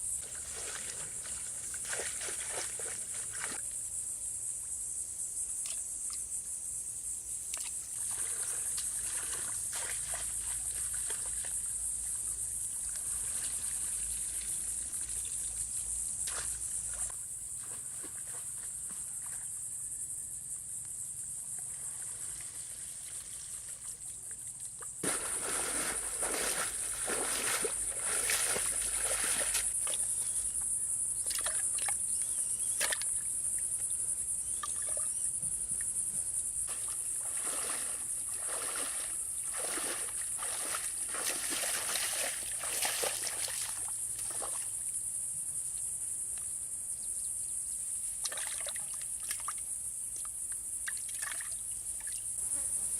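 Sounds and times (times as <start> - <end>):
steady high-pitched hiss: 0.0 - 48.3
water trickling and splashing: 0.2 - 3.6, 7.6 - 19.5, 21.6 - 30.6, 31.2 - 32.0, 36.7 - 44.8, 48.2 - 49.7, 50.8 - 52.3.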